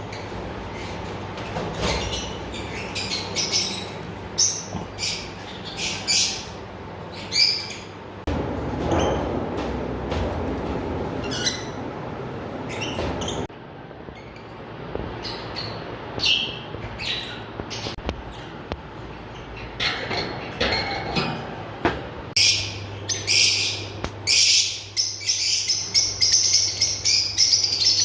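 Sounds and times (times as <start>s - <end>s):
birds chirping and squawking: 0.0s - 21.6s, 22.3s - 28.0s.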